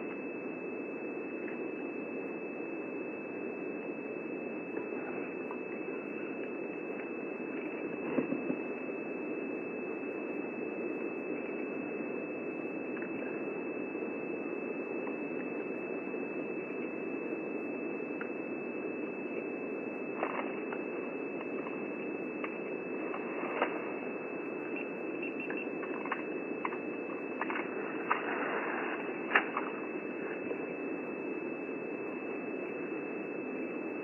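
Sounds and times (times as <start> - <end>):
thin high whine: 0.0 - 34.0
steady hiss: 22.8 - 31.3.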